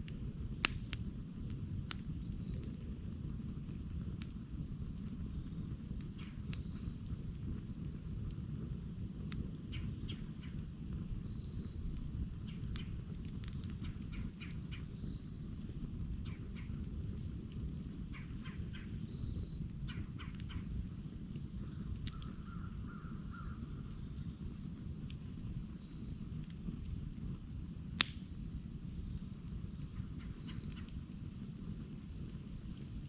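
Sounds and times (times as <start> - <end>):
campfire crackling and popping: 0.0 - 33.0.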